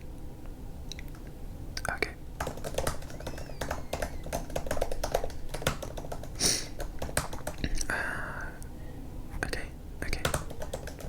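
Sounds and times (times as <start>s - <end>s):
keyboard keystroke clicks: 2.4s - 7.6s, 10.2s - 11.0s.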